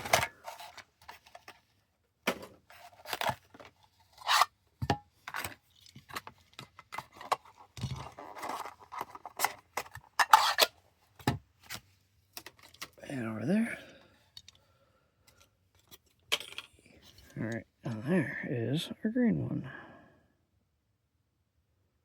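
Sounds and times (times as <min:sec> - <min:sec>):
metal tin scraping and clicking: 0:04.1 - 0:10.7.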